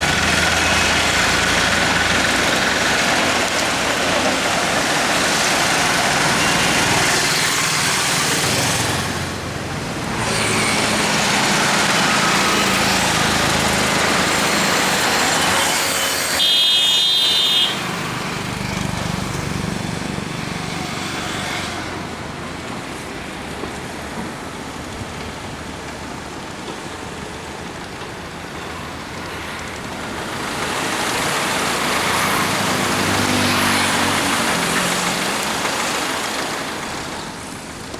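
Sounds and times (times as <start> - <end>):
traffic running steadily: 0.0 - 37.9
vehicle horn: 15.4 - 17.9.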